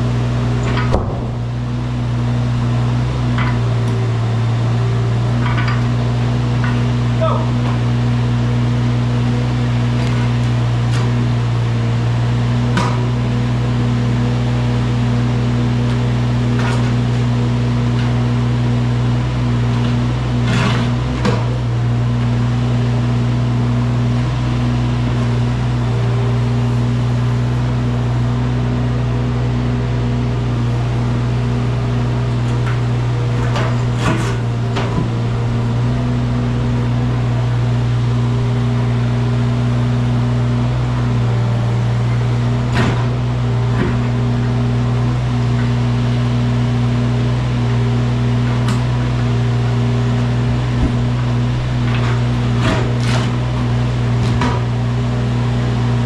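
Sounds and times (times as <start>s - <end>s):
excavator diesel engine running: 0.0s - 56.0s
sharp knocks: 0.7s - 1.5s.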